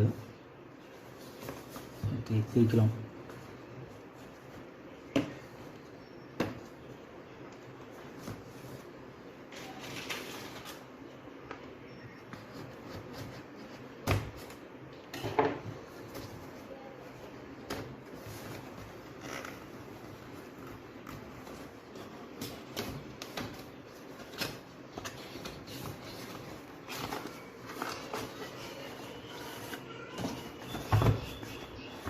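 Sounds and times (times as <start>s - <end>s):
packaging rustling: 18.2s - 32.0s.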